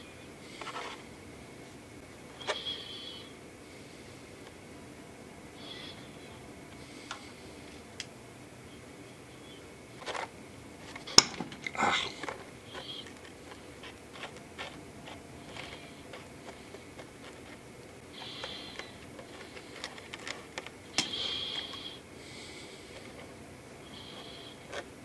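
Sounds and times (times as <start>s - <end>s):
scratchy brush strokes: 11.6s - 20.6s.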